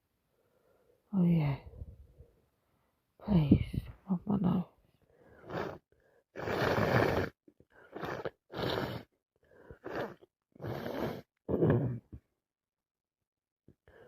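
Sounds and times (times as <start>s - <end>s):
woman blowing air through congested nose: 5.3s - 12.0s.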